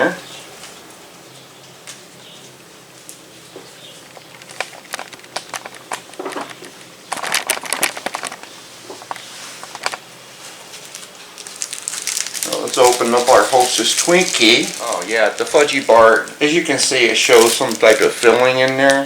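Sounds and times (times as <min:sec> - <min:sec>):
wrapper crinkling and rustling: 0:04.0 - 0:19.0.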